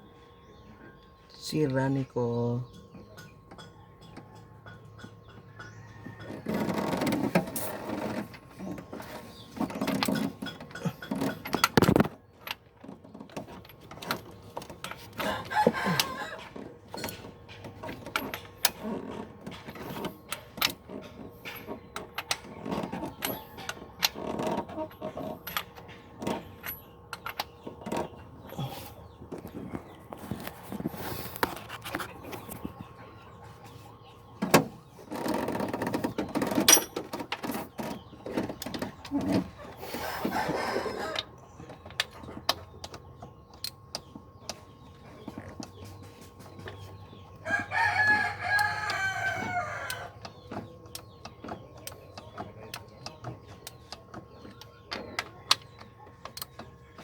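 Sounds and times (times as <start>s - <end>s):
sharp clicks and knocks: 2.8s - 28.3s
rooster crowing: 15.2s - 16.6s, 40.3s - 41.3s, 47.4s - 50.2s.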